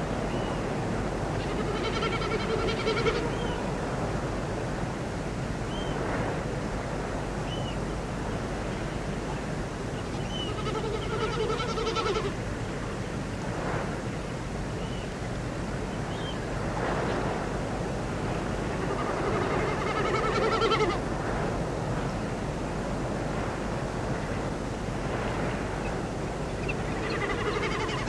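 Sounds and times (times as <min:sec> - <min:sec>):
steady rushing noise: 0:00.0 - 0:28.0
long wavering animal call: 0:01.4 - 0:03.6, 0:10.3 - 0:12.4, 0:18.8 - 0:21.0, 0:26.8 - 0:28.0.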